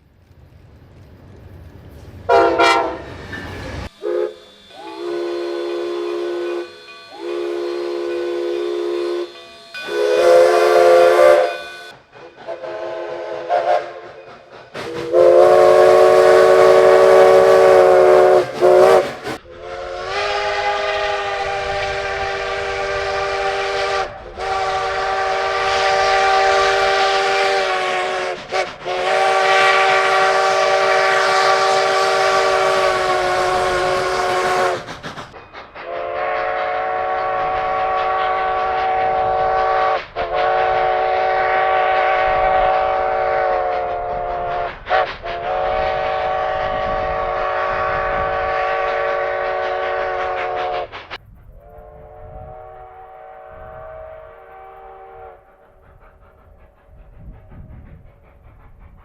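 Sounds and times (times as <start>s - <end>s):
locomotive horn chord blasts: 2.3s - 3.1s, 3.9s - 12.0s, 15.0s - 19.0s, 19.6s - 34.8s
air hiss: 3.1s - 59.0s.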